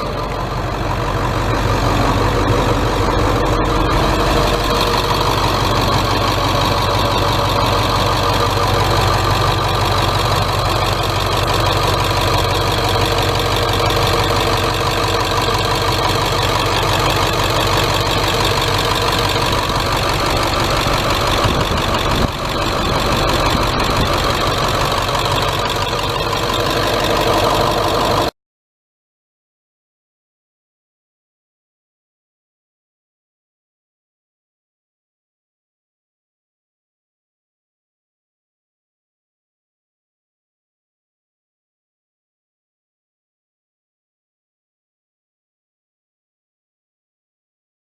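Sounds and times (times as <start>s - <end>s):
diesel engine idling: 0.0s - 28.3s.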